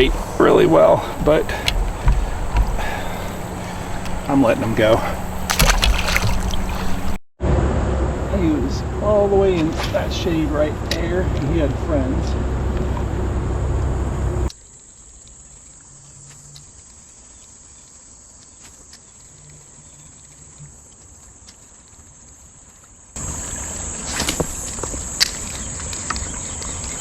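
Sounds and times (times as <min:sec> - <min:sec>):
insects trilling: 0:00.0 - 0:07.2, 0:14.5 - 0:27.0
low rumble: 0:00.0 - 0:14.5.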